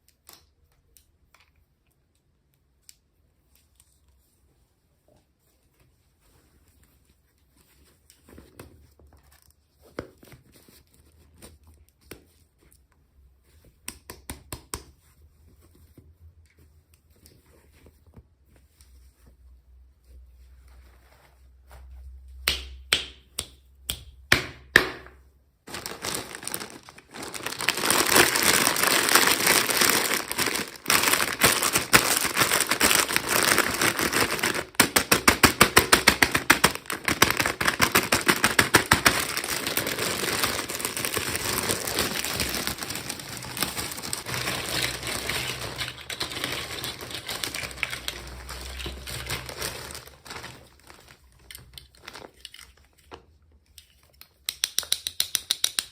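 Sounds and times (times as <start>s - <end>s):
plastic packaging clicks: 25.7s - 52.9s
plastic packaging crinkling: 25.7s - 53.1s.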